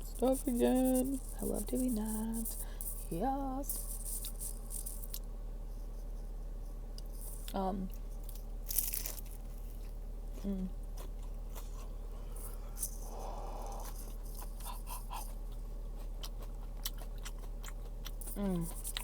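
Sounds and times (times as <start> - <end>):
food crunching: 7.0 - 19.0
person chewing fried food: 7.0 - 19.0.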